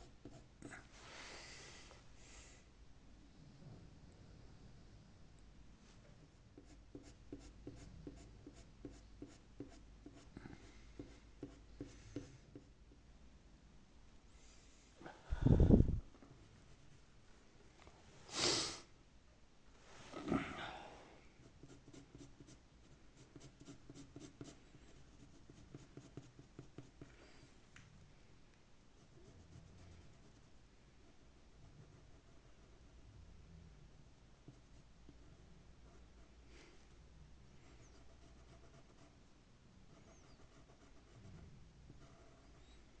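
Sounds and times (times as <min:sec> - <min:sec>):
pencil scratching on paper: 0:06.6 - 0:10.4, 0:11.0 - 0:12.7, 0:16.4 - 0:17.0, 0:21.4 - 0:27.0, 0:29.0 - 0:33.1, 0:34.4 - 0:36.4, 0:37.8 - 0:39.2, 0:39.9 - 0:42.6
pencil strokes on paper: 0:06.6 - 0:12.7, 0:21.4 - 0:27.0.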